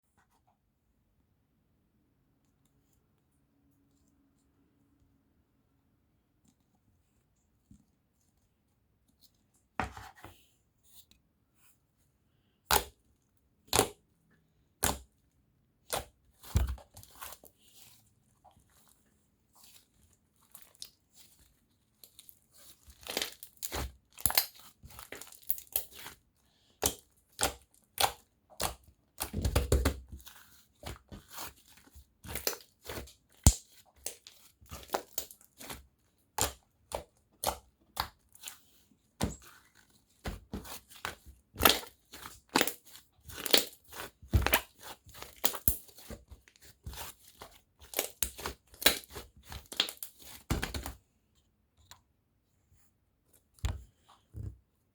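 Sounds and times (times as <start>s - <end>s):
heavy slime squish: 15.8s - 51.0s.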